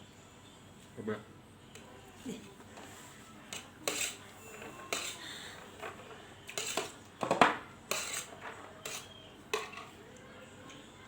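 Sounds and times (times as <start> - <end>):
cutlery clinking on plate: 3.5 - 9.9.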